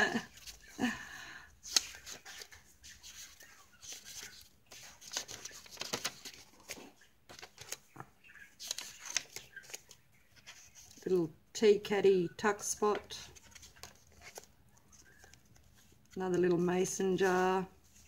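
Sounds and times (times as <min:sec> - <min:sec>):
paper rustling and crackling: 0:01.6 - 0:08.0, 0:08.6 - 0:11.1, 0:12.9 - 0:16.4.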